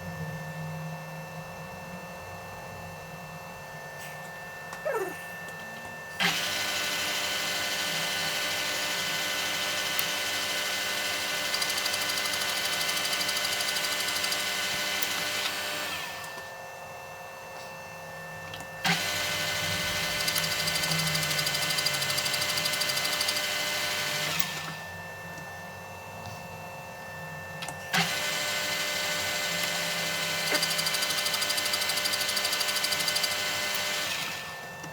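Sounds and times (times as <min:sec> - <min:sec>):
machine tool running: 0:06.2 - 0:16.2, 0:18.8 - 0:24.7, 0:28.0 - 0:34.6.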